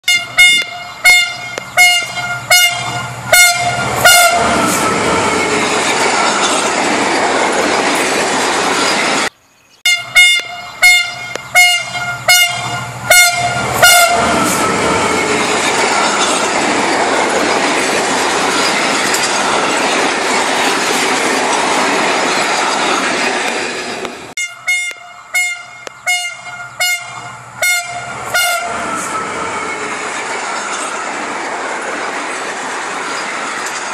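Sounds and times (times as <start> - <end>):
train horn short toots: 0.0 - 5.4, 9.9 - 15.4, 24.4 - 29.9
train running rumble: 0.0 - 9.3, 9.9 - 33.9.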